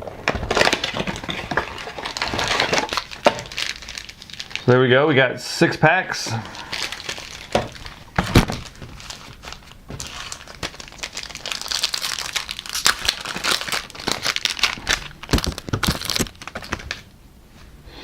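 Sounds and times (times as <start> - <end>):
wrapper tearing and crinkling: 0.0 - 4.8, 6.5 - 17.1.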